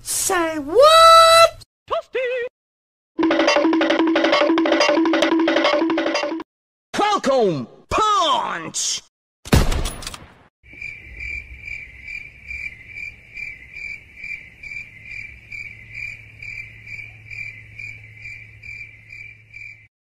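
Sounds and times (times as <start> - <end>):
crickets chirping: 10.7 - 19.9.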